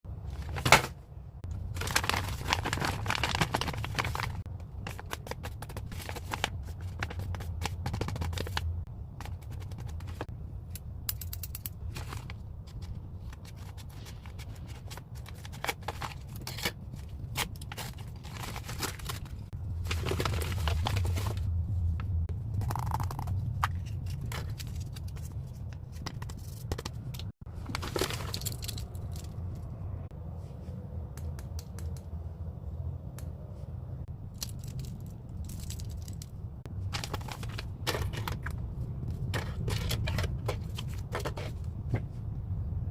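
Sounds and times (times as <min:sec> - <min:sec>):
paper crinkling and rustling: 0:00.3 - 0:10.3, 0:11.9 - 0:21.5, 0:27.6 - 0:29.2, 0:36.8 - 0:41.6.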